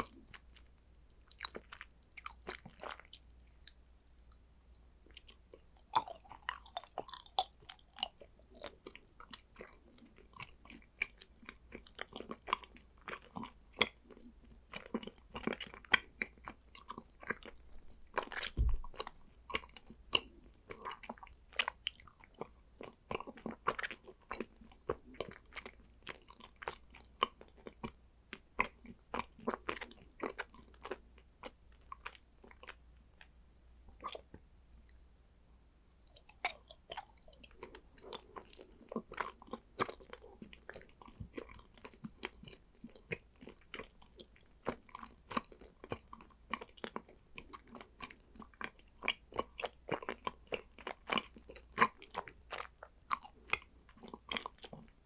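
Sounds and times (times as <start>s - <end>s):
chewing and biting chocolate: 0.0s - 4.4s, 5.1s - 33.3s, 36.0s - 55.0s
wet mouth clicks: 5.8s - 9.4s.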